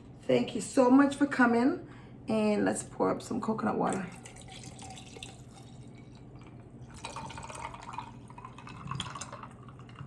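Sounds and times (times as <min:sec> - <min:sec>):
liquid pouring from a can: 0:04.2 - 0:10.0.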